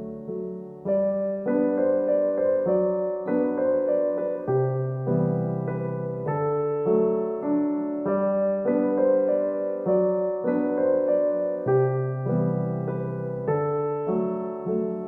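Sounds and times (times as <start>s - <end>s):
gentle piano tune: 0.0s - 15.0s.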